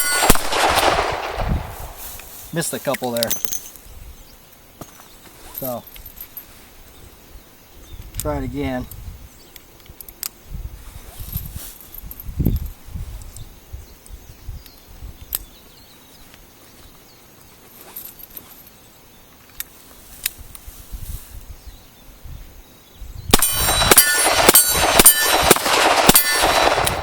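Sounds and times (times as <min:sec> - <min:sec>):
steel targets clanging: 0:00.0 - 0:00.5, 0:02.6 - 0:03.8, 0:23.4 - 0:27.0.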